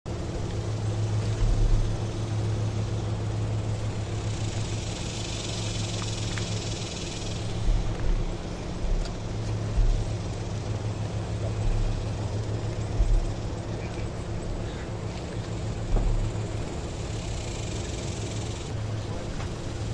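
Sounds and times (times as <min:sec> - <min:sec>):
engine hum: 0:00.1 - 0:19.9
hiss: 0:00.9 - 0:08.0
deep thumps: 0:01.3 - 0:02.7, 0:07.3 - 0:14.8, 0:15.4 - 0:16.8.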